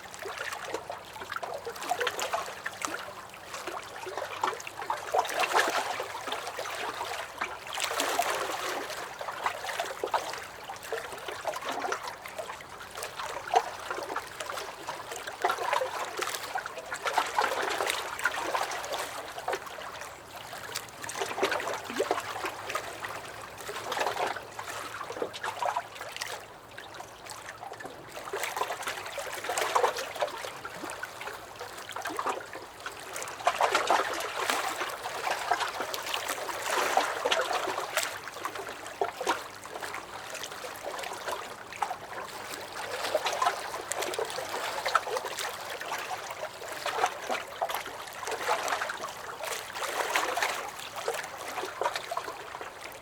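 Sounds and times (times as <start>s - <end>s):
waves lapping against a dock: 0.0s - 53.0s.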